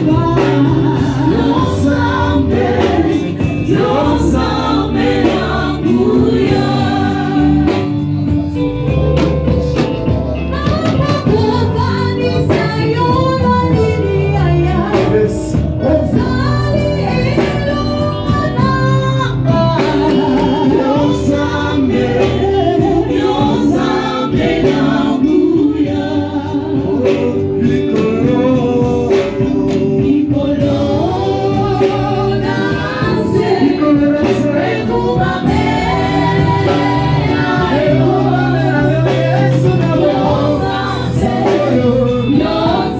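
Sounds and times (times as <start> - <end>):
bass line: 0.0 - 42.9
choir singing gospel music: 0.0 - 42.9.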